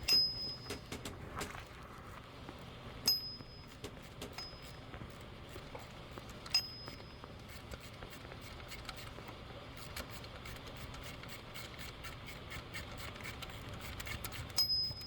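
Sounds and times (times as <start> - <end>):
sharp metallic clinks: 0.0 - 1.0, 3.0 - 4.9, 6.5 - 7.2, 14.6 - 15.0
hand tools ticking against metal: 0.0 - 1.2, 3.0 - 9.0.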